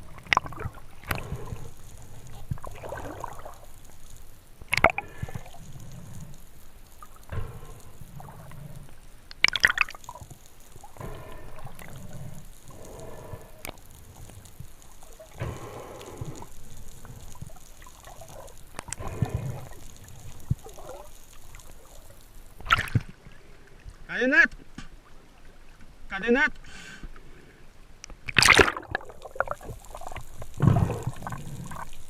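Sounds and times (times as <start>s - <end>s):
water sloshing and gurgling: 0.0s - 26.1s, 28.0s - 32.0s
sharp clicks: 0.2s - 23.0s.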